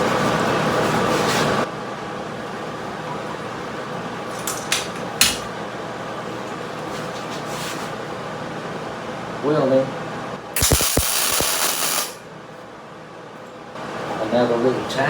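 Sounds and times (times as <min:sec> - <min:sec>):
steady hum: 0:10.4 - 0:12.9
welder arc crackling: 0:10.6 - 0:12.2.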